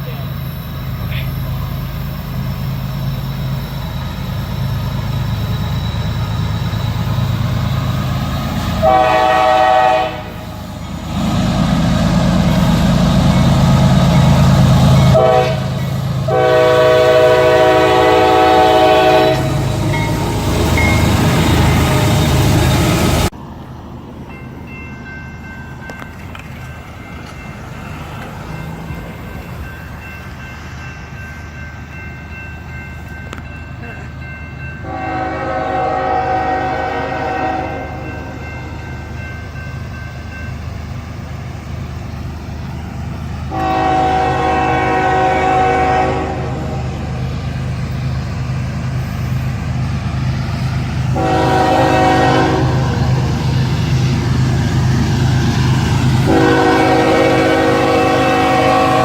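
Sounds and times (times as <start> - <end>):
low rumble of passing train: 0.0 - 59.0
locomotive horn blasts: 8.8 - 10.5, 14.9 - 23.1, 34.8 - 38.8, 43.5 - 47.0, 51.1 - 53.1, 56.2 - 59.0.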